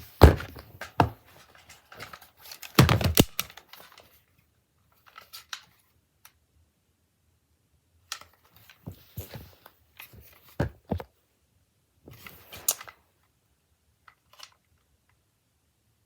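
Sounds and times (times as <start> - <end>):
objects clicking and knocking: 0.0 - 4.0.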